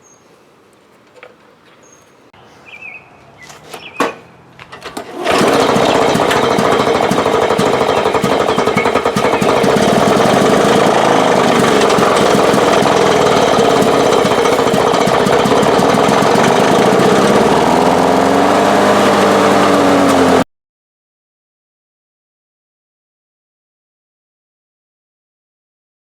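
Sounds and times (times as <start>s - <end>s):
lawn mower engine running: 4.8s - 20.4s.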